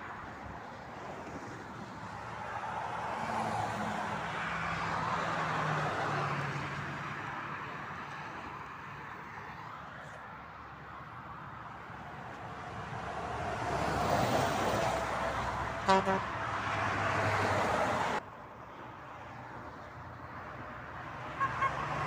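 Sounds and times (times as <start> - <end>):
motorway traffic passing: 0.0 - 22.0
vehicle horn toots: 15.8 - 16.3, 21.4 - 21.9.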